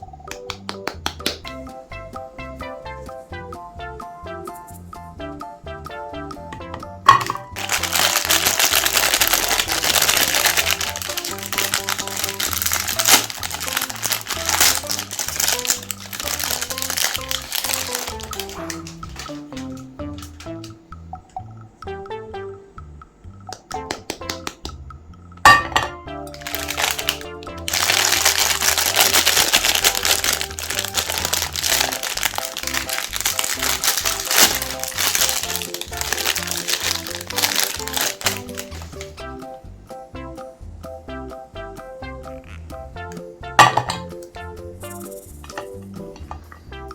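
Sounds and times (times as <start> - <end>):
background music with bass line: 0.0 - 46.9
ice cream bars crunching in grinder: 7.6 - 18.8, 26.4 - 39.2.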